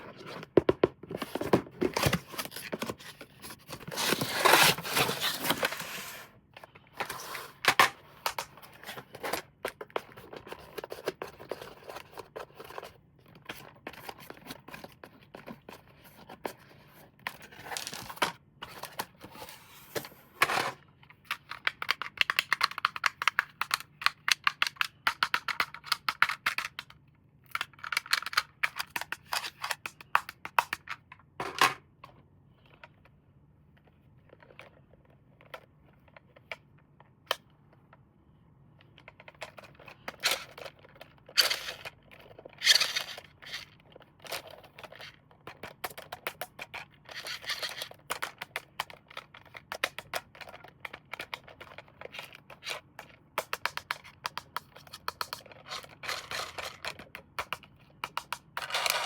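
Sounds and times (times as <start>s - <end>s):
clicks and taps: 57.0s - 58.6s.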